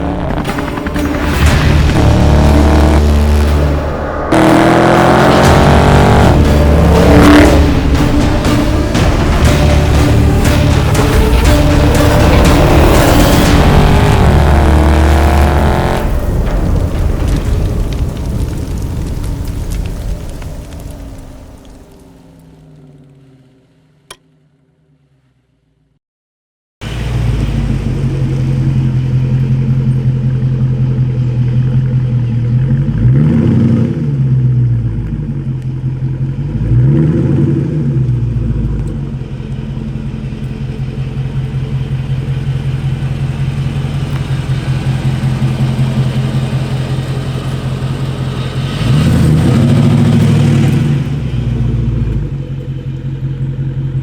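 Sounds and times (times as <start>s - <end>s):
car engine idling and revving: 0.0s - 26.0s, 26.8s - 54.0s.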